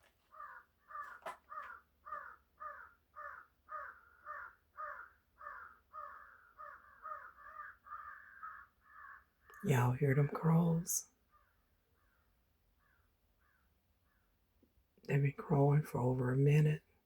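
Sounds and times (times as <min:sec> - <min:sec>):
crows cawing: 0:00.3 - 0:09.4, 0:11.3 - 0:14.3.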